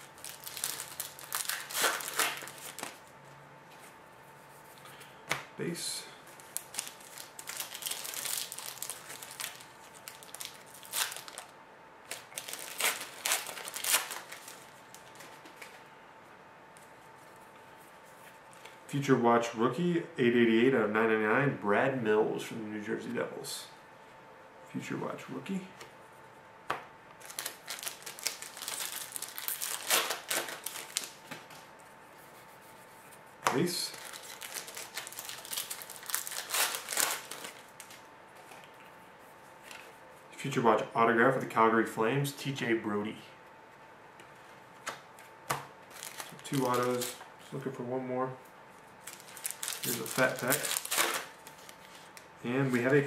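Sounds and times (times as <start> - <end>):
foil wrappers crinkling and tearing: 0.0 - 3.0, 6.4 - 11.5, 12.1 - 15.8, 27.2 - 31.6, 33.8 - 38.0, 45.9 - 47.2, 49.0 - 53.0.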